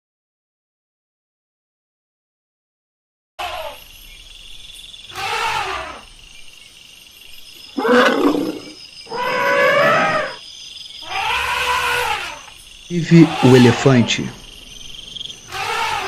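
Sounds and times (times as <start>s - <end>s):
elephant calling: 5.1s - 6.1s, 7.7s - 10.4s, 11.0s - 14.4s, 15.5s - 16.0s.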